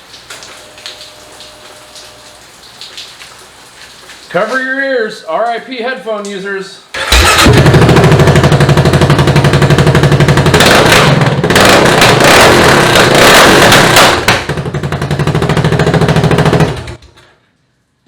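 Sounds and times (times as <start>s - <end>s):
loud motorcycle engine running: 7.0s - 17.0s.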